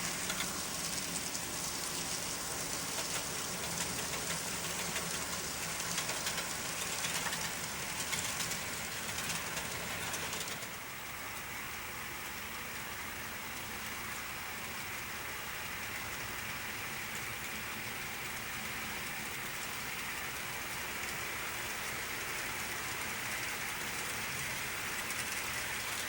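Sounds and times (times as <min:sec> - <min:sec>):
steady hiss: 0:00.0 - 0:10.6
wheels clicking over rails: 0:00.0 - 0:10.8.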